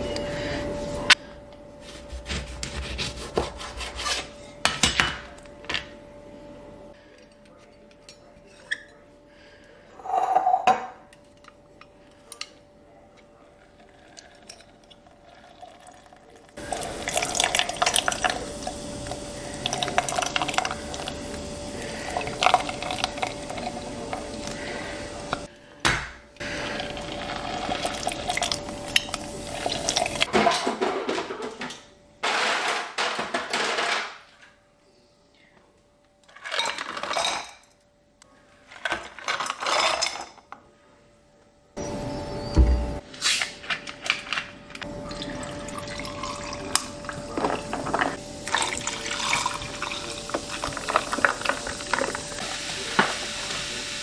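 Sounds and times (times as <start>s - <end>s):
dishes and cutlery clinking: 2.3s - 5.9s, 7.2s - 9.1s, 9.9s - 12.6s, 29.9s - 34.2s, 36.3s - 37.8s
running water: 15.4s - 25.5s, 26.4s - 30.3s, 44.9s - 54.0s.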